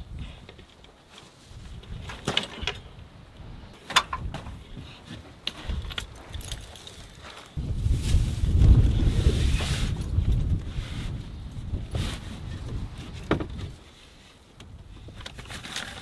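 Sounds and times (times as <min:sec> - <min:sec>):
wind buffeting microphone: 0:07.6 - 0:13.9.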